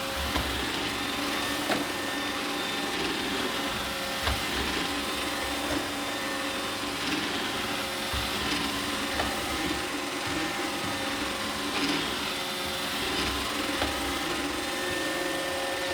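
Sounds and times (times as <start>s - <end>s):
robot vacuum motor whir: 0.0s - 15.9s.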